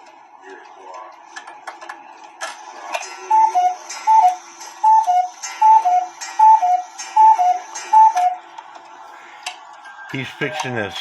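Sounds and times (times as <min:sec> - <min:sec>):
cuckoo clock calling: 0:03.1 - 0:08.4.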